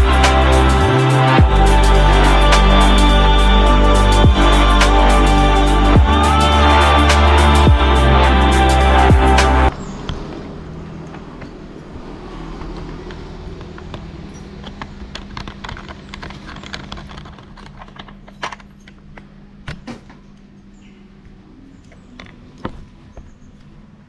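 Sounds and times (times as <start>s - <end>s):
motorcycle engine running: 0.0s - 9.7s.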